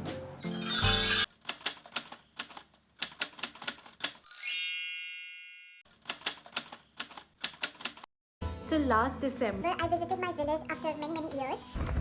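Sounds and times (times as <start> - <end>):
typewriter bell ding: 0.5 - 1.3
typewriter keys clacking: 1.0 - 4.2, 5.9 - 8.1.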